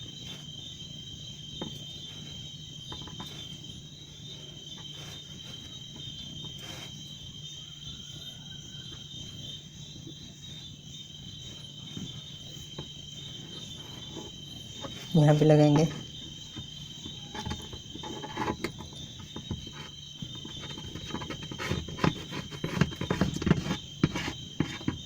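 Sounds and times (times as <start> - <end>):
insects trilling: 0.0 - 25.0
faint clicks and taps: 1.6 - 3.5, 11.9 - 25.0.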